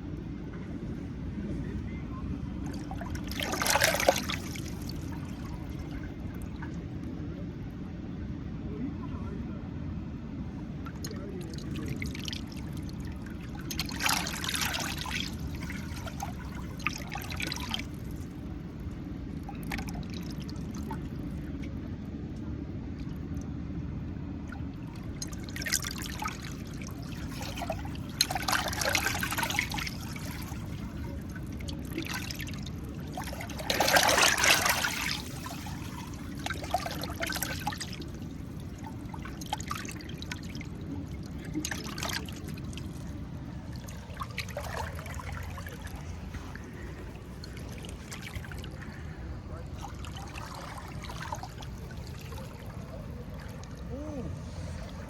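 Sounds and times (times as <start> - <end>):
steady low rumble: 0.0 - 55.0
water splashing and trickling: 2.7 - 7.0, 10.9 - 22.0, 24.2 - 55.0.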